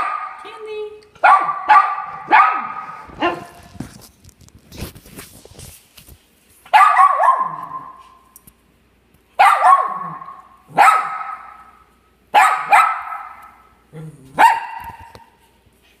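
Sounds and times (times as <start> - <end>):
small dog barking: 0.0 - 0.4, 1.2 - 3.6, 6.7 - 8.0, 9.4 - 15.2
rustling: 2.1 - 6.8.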